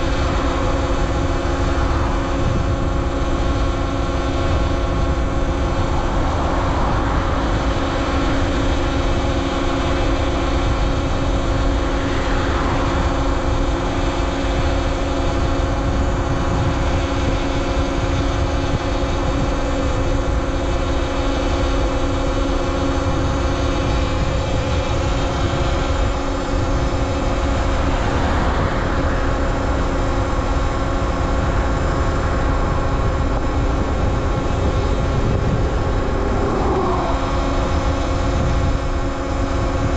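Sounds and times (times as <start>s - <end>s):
electric motor whine: 0.0s - 39.9s
wind rumble on microphone: 0.0s - 39.9s.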